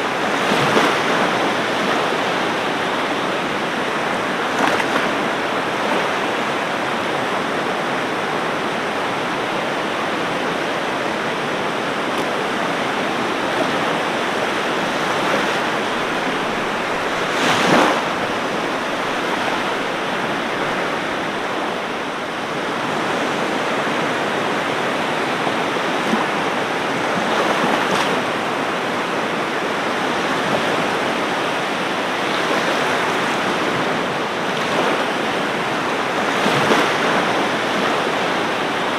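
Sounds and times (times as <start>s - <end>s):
ocean waves breaking: 0.0s - 38.9s.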